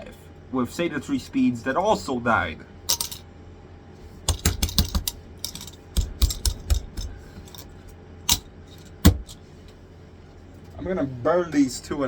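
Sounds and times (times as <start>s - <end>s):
small hard parts clicking: 2.9s - 3.2s, 4.3s - 7.7s, 8.3s - 9.4s.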